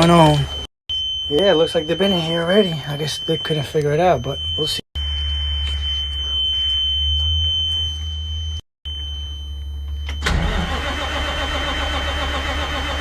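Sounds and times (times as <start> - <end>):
high warning tone: 0.0 - 12.6
engine cranking without starting: 10.2 - 13.0.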